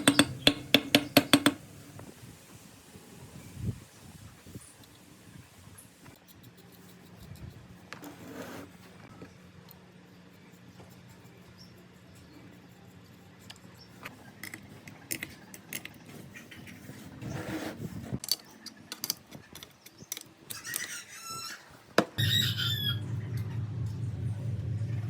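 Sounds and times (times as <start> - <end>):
clicks and squeaks of hand work: 10.6 - 22.4.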